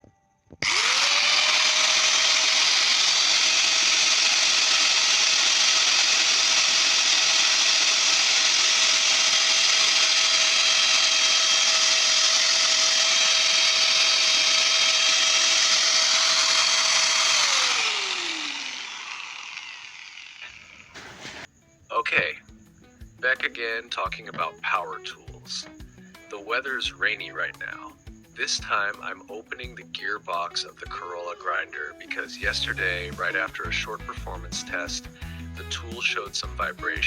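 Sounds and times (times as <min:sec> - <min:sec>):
angle grinder motor whining: 0:00.6 - 0:21.5.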